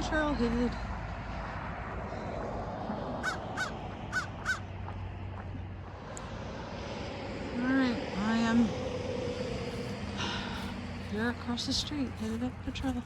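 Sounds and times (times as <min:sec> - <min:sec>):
steady background noise: 0:00.0 - 0:13.0
crow cawing: 0:03.2 - 0:04.7.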